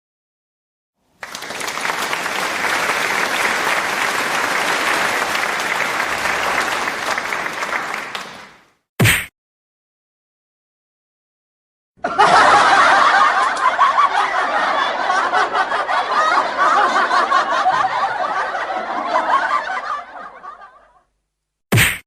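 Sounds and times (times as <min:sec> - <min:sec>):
people laughing: 0:12.0 - 0:21.0.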